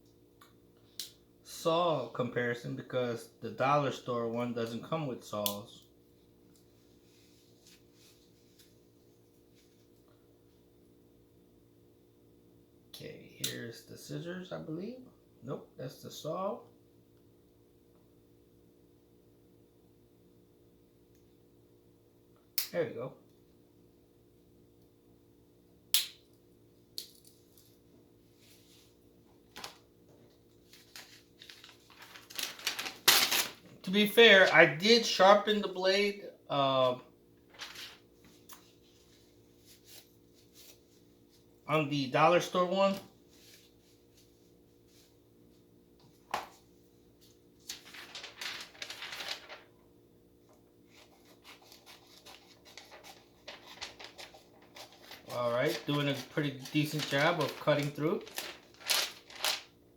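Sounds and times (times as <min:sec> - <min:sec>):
paper rustling: 0:29.5 - 0:29.9, 0:30.6 - 0:35.2, 0:37.5 - 0:41.0, 0:47.2 - 0:49.7, 0:50.9 - 0:59.8.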